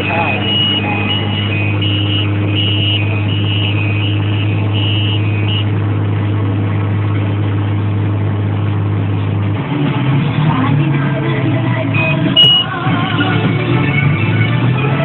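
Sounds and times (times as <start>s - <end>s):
two-tone electronic beep: 0.0s - 5.6s, 12.0s - 12.7s
tractor engine droning: 0.0s - 15.0s.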